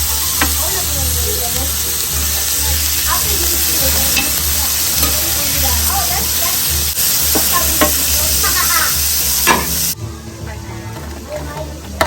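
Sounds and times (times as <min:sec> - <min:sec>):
food sizzling loudly: 0:00.0 - 0:11.0
faint voices: 0:00.0 - 0:12.0.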